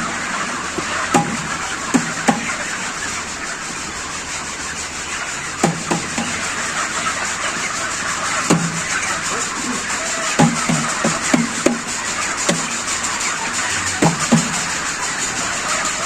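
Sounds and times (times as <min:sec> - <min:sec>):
flock of chickens: 0:00.0 - 0:16.0
machinery running: 0:00.0 - 0:16.0
short knocks: 0:13.8 - 0:14.9.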